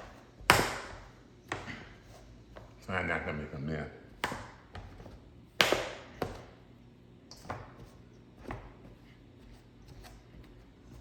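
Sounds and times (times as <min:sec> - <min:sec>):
pastry blender chopping butter: 0:00.0 - 0:01.9, 0:04.0 - 0:06.6.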